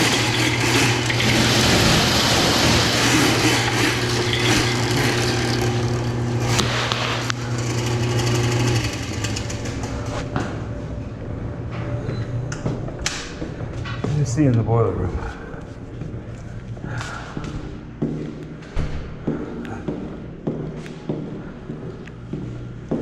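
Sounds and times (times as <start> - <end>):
drain-cleaning machine motor hum: 0.0 - 11.9.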